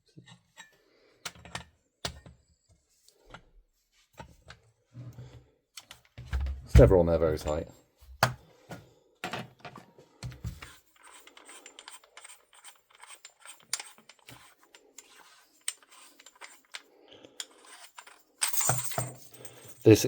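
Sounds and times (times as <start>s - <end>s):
small clicks of rifle parts: 5.8s - 6.2s, 10.3s - 18.8s.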